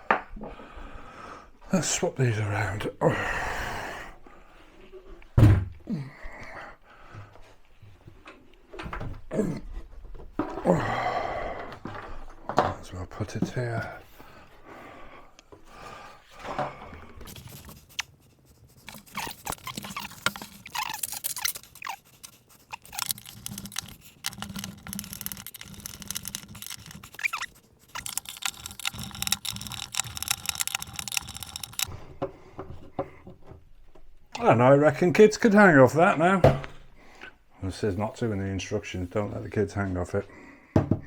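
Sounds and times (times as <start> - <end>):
cabinet scraping and rubbing: 16.4 - 31.6.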